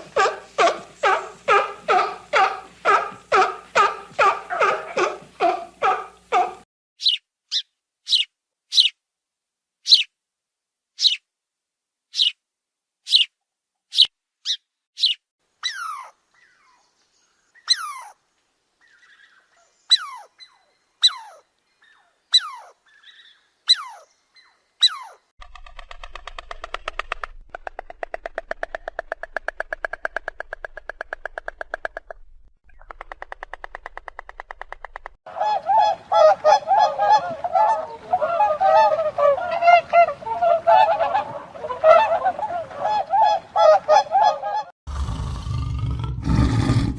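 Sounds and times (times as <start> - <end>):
bird chirps and calls: 7.0 - 9.0, 9.8 - 10.1, 11.0 - 11.2, 12.1 - 12.4, 13.0 - 13.3, 13.9 - 18.2, 18.8 - 25.3.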